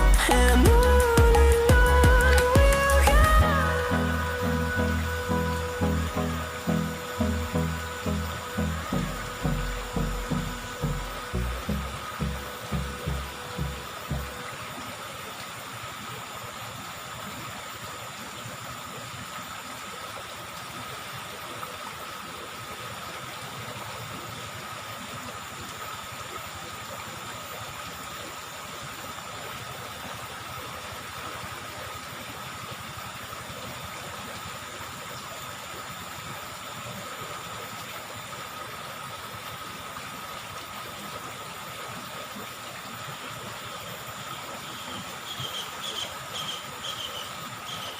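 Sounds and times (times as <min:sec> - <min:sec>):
river water flowing: 0:00.0 - 0:47.9
faint high-pitched tone: 0:03.4 - 0:15.1.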